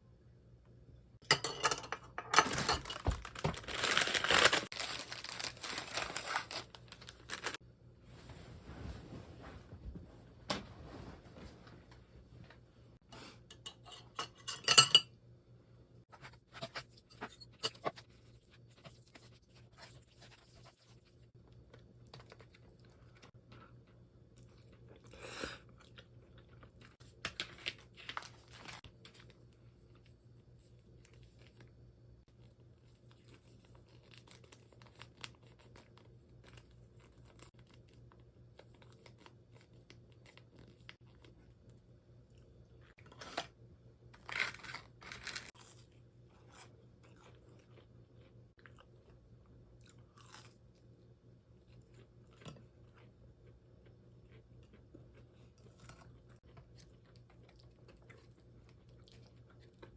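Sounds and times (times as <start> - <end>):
dishes and cutlery clinking: 1.2 - 3.2, 13.5 - 15.1.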